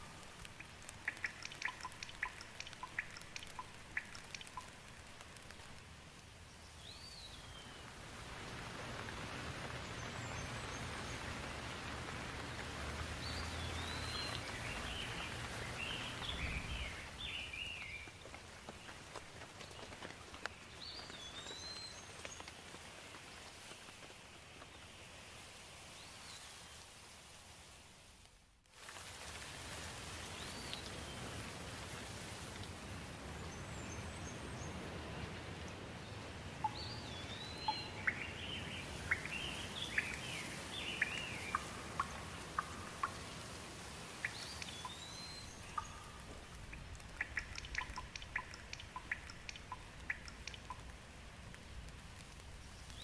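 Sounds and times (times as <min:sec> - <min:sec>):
rain hiss: 0:00.0 - 0:53.0
birds chirping: 0:09.4 - 0:19.0, 0:33.3 - 0:50.8.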